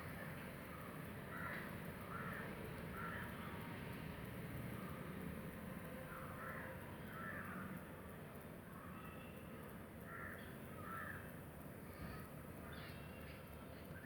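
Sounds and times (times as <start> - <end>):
faint bird calls: 11.9 - 14.0.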